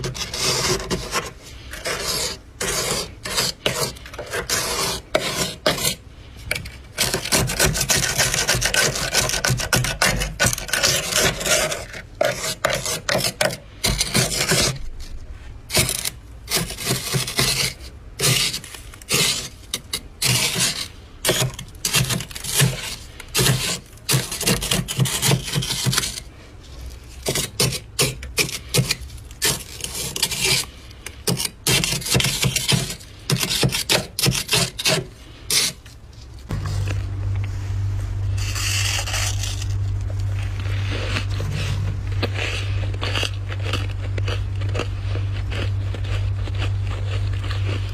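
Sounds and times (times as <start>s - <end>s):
frost being scraped: 0.0s - 47.9s.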